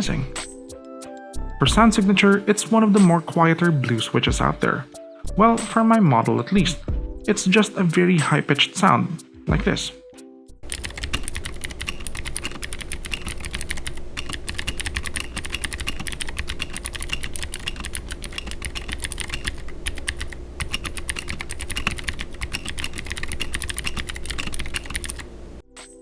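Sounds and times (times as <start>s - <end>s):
fast clicky keyboard typing: 10.6s - 25.6s.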